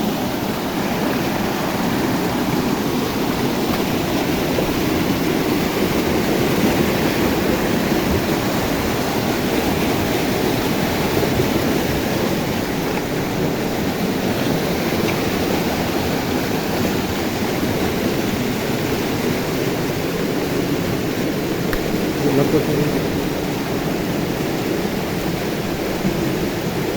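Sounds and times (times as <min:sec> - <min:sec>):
river water rushing: 0:00.0 - 0:26.9.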